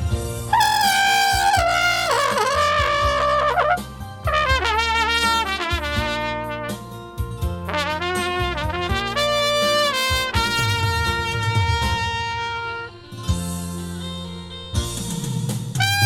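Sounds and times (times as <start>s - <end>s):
low bass notes: 0.5s - 6.6s
trumpet playing slow melody: 0.5s - 6.9s, 7.7s - 13.2s, 15.8s - 16.0s.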